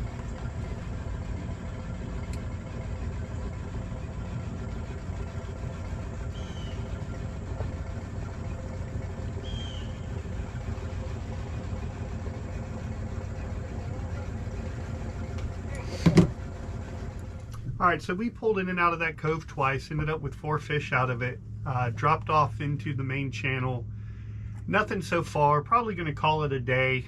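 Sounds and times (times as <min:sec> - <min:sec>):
boat motor humming: 0:00.0 - 0:27.0.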